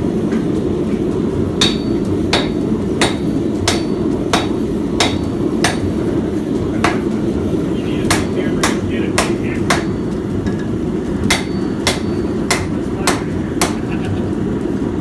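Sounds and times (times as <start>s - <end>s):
steady low rumble: 0.0s - 15.0s
hammer blows on anvil: 1.6s - 7.4s, 8.0s - 13.9s.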